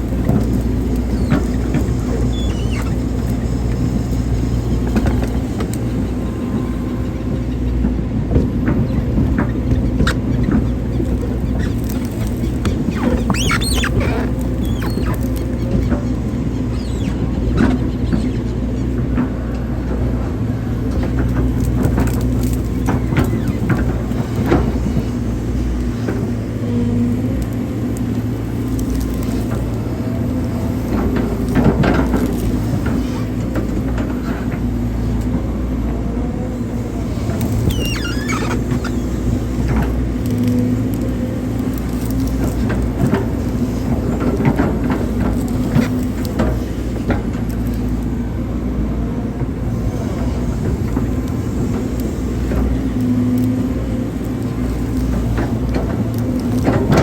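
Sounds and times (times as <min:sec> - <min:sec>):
hydraulic excavator running: 0:00.0 - 0:57.0
brief squeaks: 0:01.0 - 0:03.6, 0:09.9 - 0:18.5, 0:37.5 - 0:39.2.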